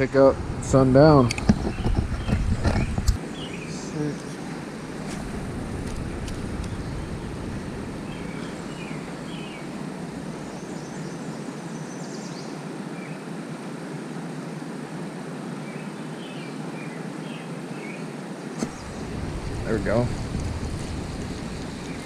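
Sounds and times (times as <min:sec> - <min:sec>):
small birds chirping: 0:01.1 - 0:05.2, 0:05.8 - 0:13.3, 0:15.6 - 0:22.0
water rushing over spillway: 0:18.6 - 0:22.0.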